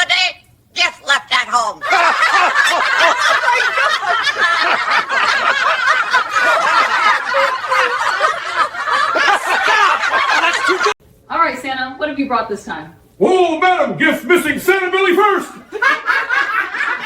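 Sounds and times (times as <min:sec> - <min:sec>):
group laughing heartily: 0:01.8 - 0:11.0, 0:15.6 - 0:17.0.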